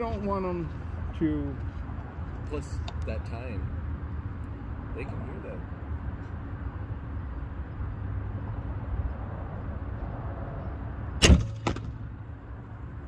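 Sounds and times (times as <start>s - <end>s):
bolt striking target: 11.2s - 12.0s
crossbow firing crack: 11.2s - 12.0s.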